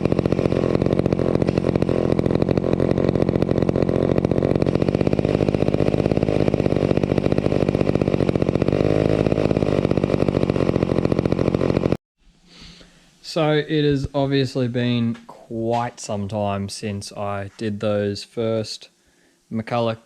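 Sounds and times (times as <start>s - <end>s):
chainsaw engine running: 0.0s - 12.0s.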